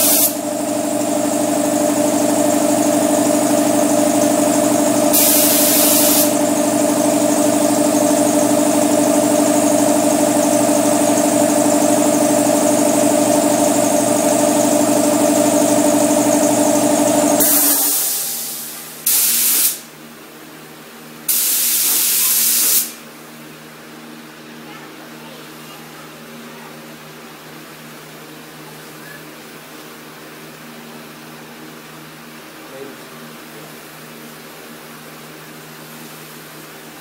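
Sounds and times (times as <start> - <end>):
air hissing release: 0.0 - 0.4, 5.1 - 6.4, 17.4 - 19.9, 21.3 - 23.0
spray gun air blasts: 0.0 - 0.4, 5.1 - 6.4, 17.4 - 19.8, 21.3 - 23.0
air compressor humming: 0.0 - 20.0, 21.3 - 24.2.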